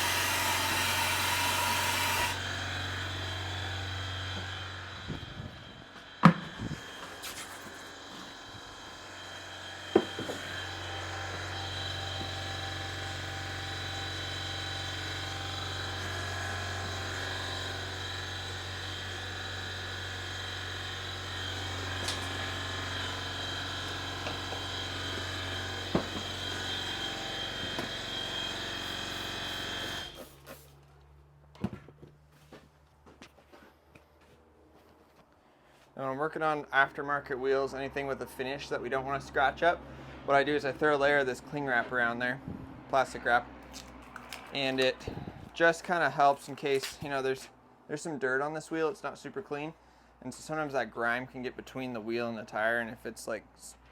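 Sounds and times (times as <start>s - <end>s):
tire machine motor drone: 0.0s - 30.2s.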